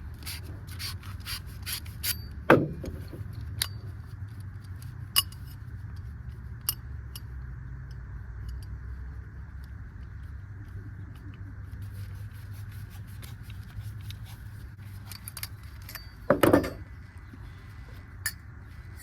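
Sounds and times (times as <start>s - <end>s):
steady low hum: 0.0s - 19.0s
sandpaper rubbing a pipe: 11.8s - 15.1s.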